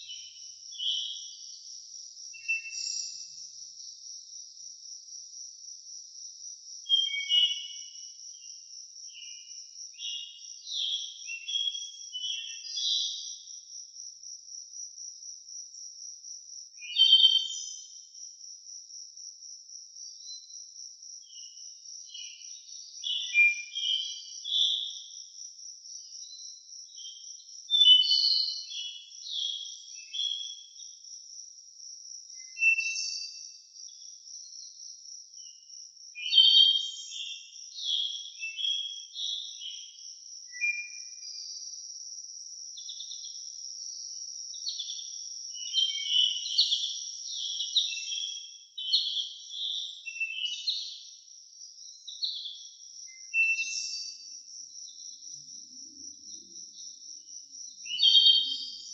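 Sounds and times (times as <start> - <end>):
songbirds singing: 0.0 - 58.9.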